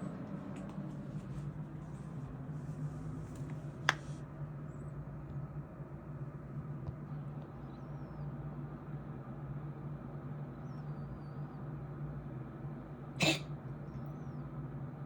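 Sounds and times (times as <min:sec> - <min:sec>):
steady low hum: 0:00.0 - 0:15.0
pet coughing: 0:13.2 - 0:13.5.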